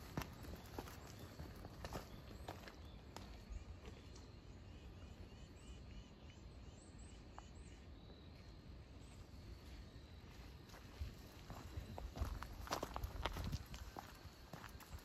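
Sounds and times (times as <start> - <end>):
bird chirping: 0.0 - 10.5.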